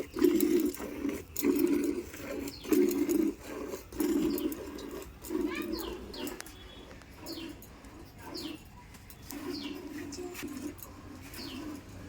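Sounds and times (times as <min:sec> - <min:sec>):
milk squirting into a bucket: 0:00.0 - 0:12.0.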